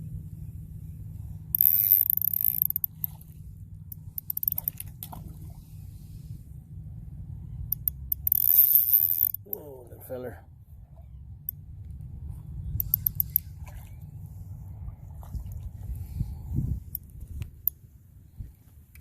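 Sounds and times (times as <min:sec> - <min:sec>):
low rumble: 0:00.0 - 0:19.0
fishing reel rasping: 0:01.5 - 0:04.9, 0:07.7 - 0:09.8, 0:12.8 - 0:13.5
fishing reel ticks: 0:01.5 - 0:05.1, 0:07.7 - 0:09.8, 0:12.8 - 0:13.5.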